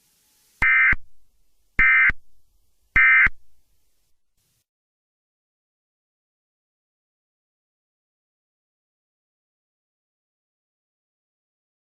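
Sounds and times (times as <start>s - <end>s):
digital tone squawks: 0.6s - 1.0s, 1.8s - 2.2s, 3.0s - 3.4s.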